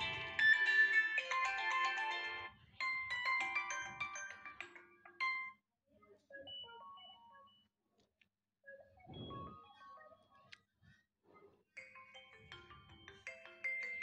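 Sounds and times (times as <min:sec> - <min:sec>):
phone ringtone melodies: 0:00.0 - 0:05.6, 0:11.8 - 0:14.0.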